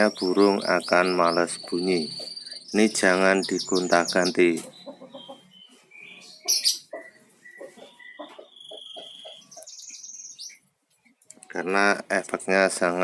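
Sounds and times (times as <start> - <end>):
bird chirps and whistles: 5.9 - 10.6.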